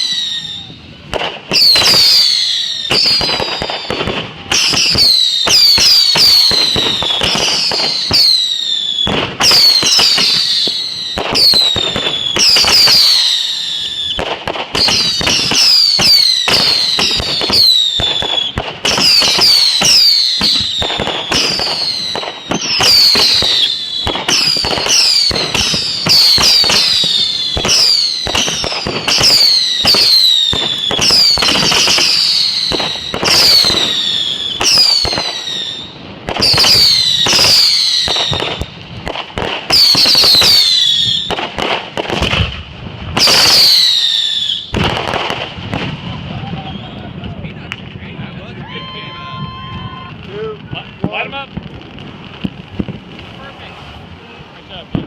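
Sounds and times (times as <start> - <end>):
fireworks whistles falling: 0.0 - 47.9, 48.5 - 54.0
fireworks bangs and crackling: 0.0 - 55.0.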